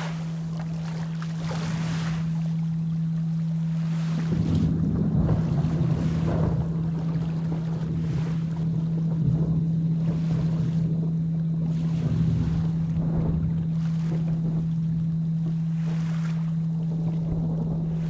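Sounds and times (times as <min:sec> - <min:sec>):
steady low tone humming: 0:00.0 - 0:18.0
low rumbles of thunder: 0:04.2 - 0:15.6, 0:16.8 - 0:18.0.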